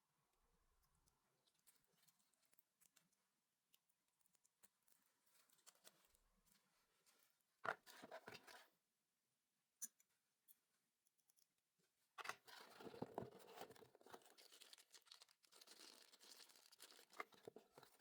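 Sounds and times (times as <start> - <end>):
packaging rustling and crinkling: 12.5 - 18.0.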